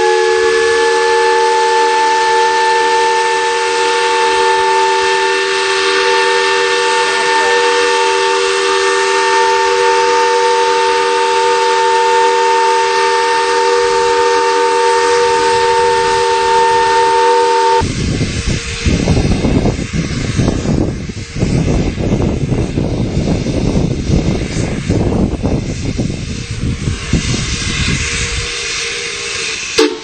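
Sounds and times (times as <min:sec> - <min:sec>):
chime steam whistle blowing: 0:00.0 - 0:19.6, 0:25.8 - 0:30.0
steam hissing: 0:00.0 - 0:30.0.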